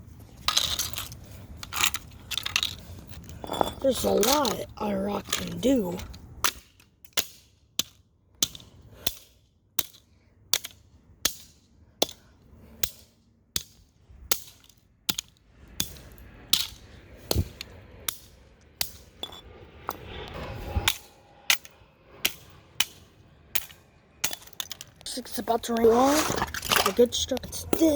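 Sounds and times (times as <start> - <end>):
rough rumbling noise: 0.0 - 6.4, 15.5 - 27.9.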